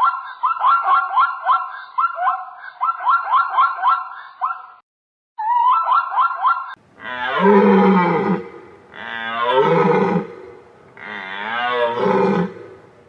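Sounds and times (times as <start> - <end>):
loud low animal calls: 6.9 - 13.0.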